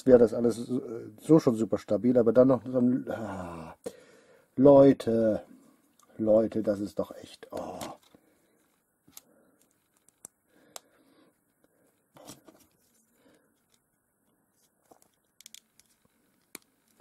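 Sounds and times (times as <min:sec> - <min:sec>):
plastic building bricks clicking: 0:14.9 - 0:17.0.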